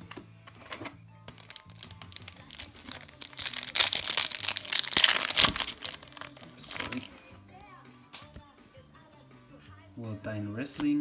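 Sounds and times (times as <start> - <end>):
foil wrapper crinkling and tearing: 0.6 - 7.3.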